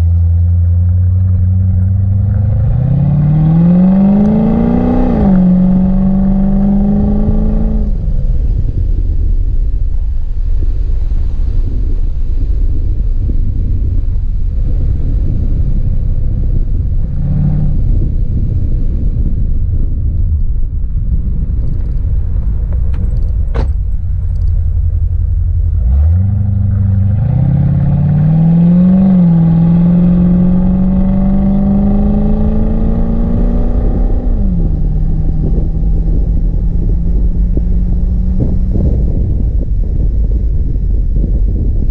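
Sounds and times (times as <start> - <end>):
car engine revving: 0.0 - 8.7, 14.7 - 19.0, 21.4 - 40.0.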